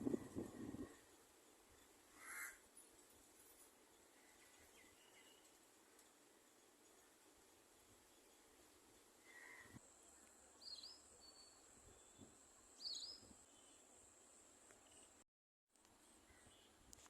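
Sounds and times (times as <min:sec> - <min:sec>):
background hiss: 0:00.0 - 0:15.2, 0:15.8 - 0:17.0
faint bird chirps: 0:03.4 - 0:14.0, 0:16.0 - 0:16.9.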